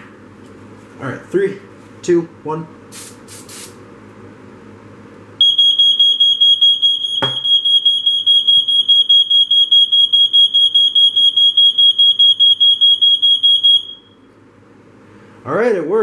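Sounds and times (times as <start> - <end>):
smoke alarm beeping: 5.4 - 14.3.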